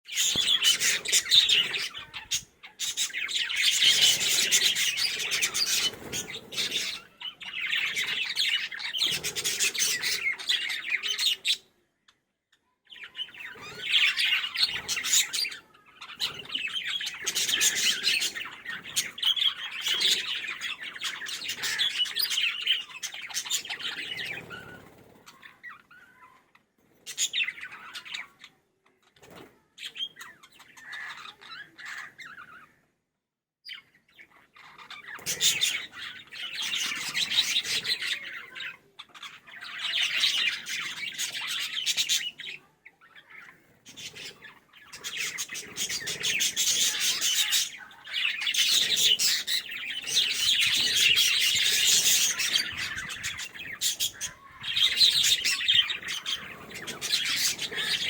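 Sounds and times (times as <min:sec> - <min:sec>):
parrots chattering and chirping: 0:00.0 - 0:12.2, 0:12.9 - 0:32.8, 0:33.7 - 0:58.0.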